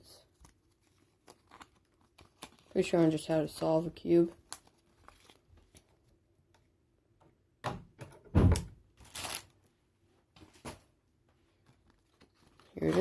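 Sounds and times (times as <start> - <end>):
packaging rustling: 0.2 - 6.2, 9.0 - 9.7, 11.6 - 13.0.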